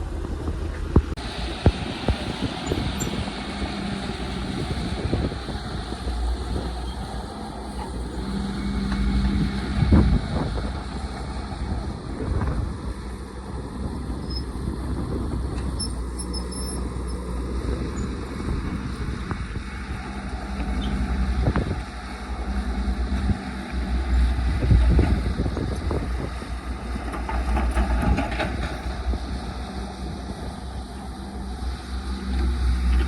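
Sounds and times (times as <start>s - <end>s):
excavator diesel engine running: 0.0s - 33.0s
machine knocks and clanks: 27.0s - 29.0s.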